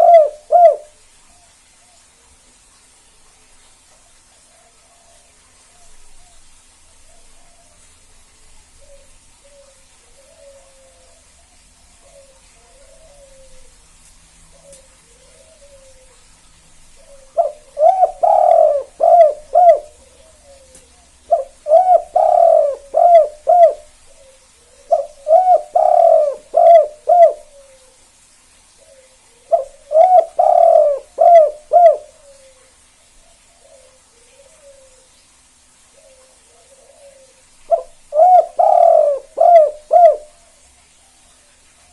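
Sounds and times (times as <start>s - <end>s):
dove cooing: 0.0s - 1.0s, 8.8s - 13.8s, 14.5s - 16.3s, 17.0s - 28.0s, 28.8s - 32.7s, 33.3s - 35.1s, 36.0s - 40.6s.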